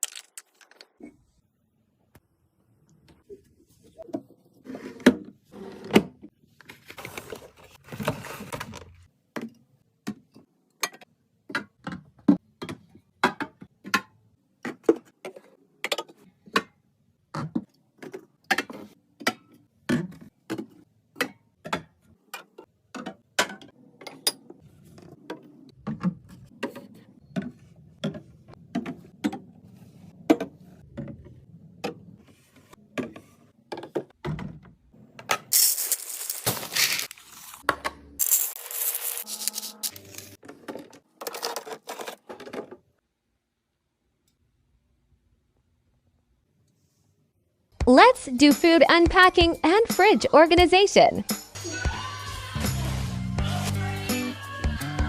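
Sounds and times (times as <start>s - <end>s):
package rustling: 35.5s - 37.6s, 38.2s - 40.4s.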